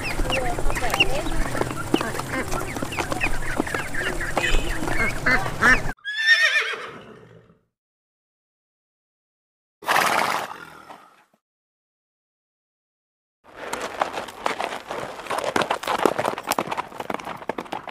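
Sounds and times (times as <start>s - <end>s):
birds calling: 0.0s - 7.0s
farmyard noise: 0.0s - 7.3s, 13.5s - 17.9s
horse whinnying: 6.0s - 7.6s.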